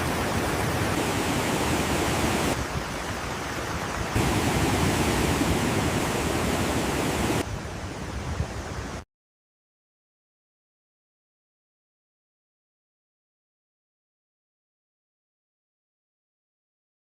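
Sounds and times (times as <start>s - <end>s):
rushing floodwater: 0.0s - 9.0s.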